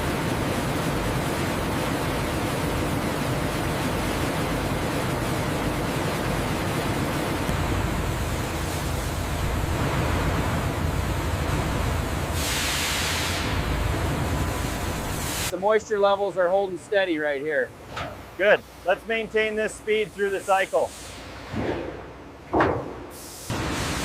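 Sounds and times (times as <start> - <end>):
steady dense noise: 0.0 - 24.0
brief loud hiss: 12.4 - 13.6.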